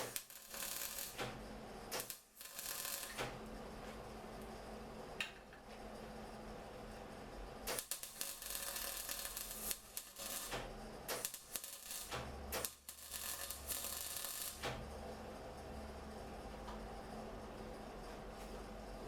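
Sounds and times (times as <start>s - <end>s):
harsh crackling and rasping on metal: 0.0s - 1.2s
steady low hum: 14.8s - 19.0s.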